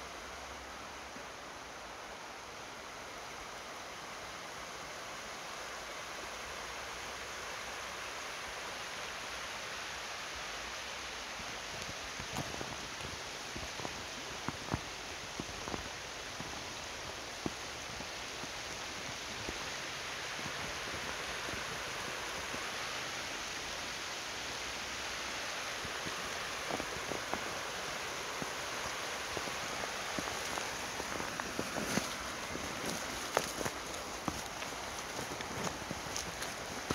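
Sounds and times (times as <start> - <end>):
creek water running: 0.0 - 36.9
snowshoe steps crunching in snow: 11.8 - 19.8, 25.8 - 36.9.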